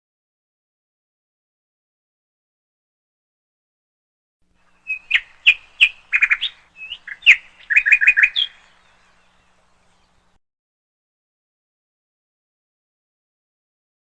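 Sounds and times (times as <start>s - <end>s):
small bird chirping and trilling: 4.6s - 10.4s.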